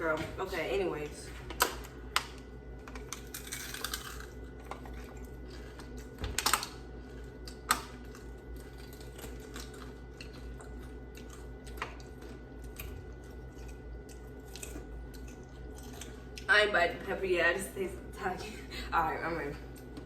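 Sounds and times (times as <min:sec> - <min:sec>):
low steady hum: 0:00.0 - 0:20.0
person crunching chips: 0:02.8 - 0:16.5.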